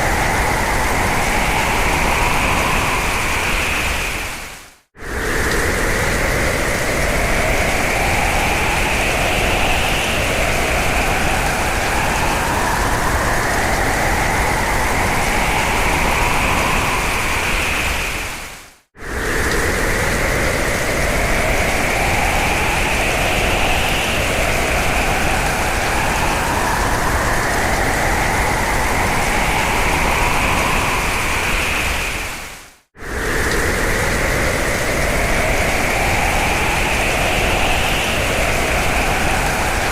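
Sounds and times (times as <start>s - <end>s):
strong wind rushing and whistling: 0.0s - 39.9s.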